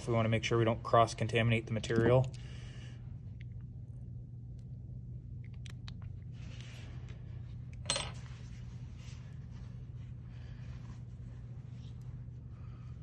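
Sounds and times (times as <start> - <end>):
steady low hum: 0.0 - 13.0
metal tool clinking down: 7.8 - 8.2.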